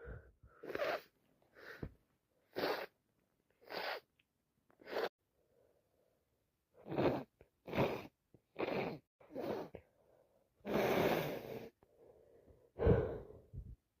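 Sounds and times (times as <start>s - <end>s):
person sniffing through blocked nose: 0.6s - 1.9s, 2.5s - 3.0s, 3.6s - 4.1s, 4.8s - 5.1s, 6.9s - 9.8s, 10.6s - 11.7s.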